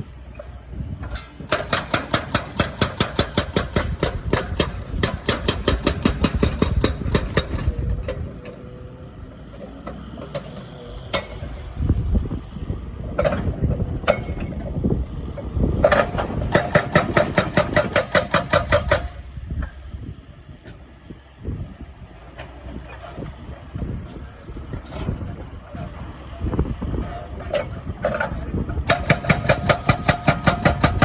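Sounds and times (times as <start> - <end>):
excavator engine running: 0.0 - 31.0
hydraulic breaker hammering: 1.2 - 8.3, 15.8 - 19.2, 27.5 - 31.0.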